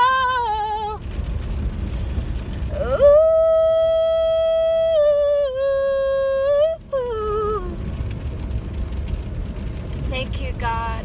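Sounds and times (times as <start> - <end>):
woman singing unaccompanied: 0.0 - 1.0, 2.7 - 7.8
low rumble: 0.0 - 11.0.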